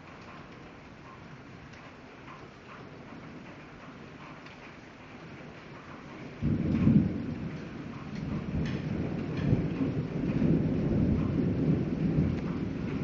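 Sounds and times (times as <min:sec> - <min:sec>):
light rain falling: 0:00.0 - 0:13.0
thunder rumbling: 0:06.0 - 0:13.0.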